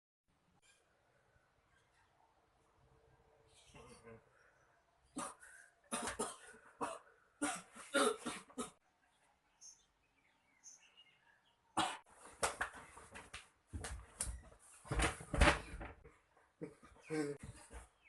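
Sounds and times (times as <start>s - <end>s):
person coughing: 5.2s - 8.8s.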